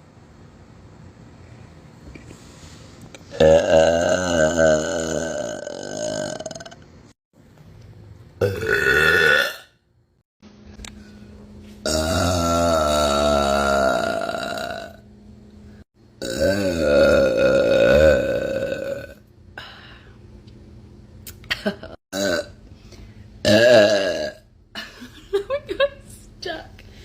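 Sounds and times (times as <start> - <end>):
woman burping: 3.3 - 6.8, 8.4 - 9.7, 11.9 - 15.0, 16.2 - 19.2, 22.1 - 22.6, 23.4 - 24.4.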